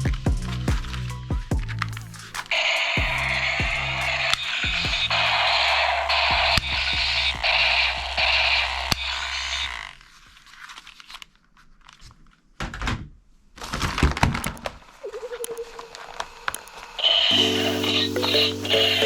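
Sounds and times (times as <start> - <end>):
background music: 17.3 - 19.0.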